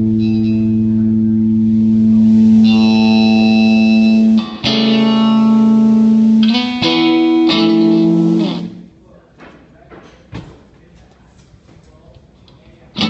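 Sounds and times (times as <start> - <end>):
guitar playing sustained chords: 0.0 - 8.9.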